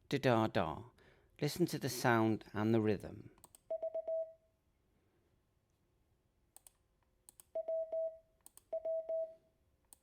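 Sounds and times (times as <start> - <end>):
sharp clicks: 6.6 - 7.5
morse code beeps: 7.6 - 9.4.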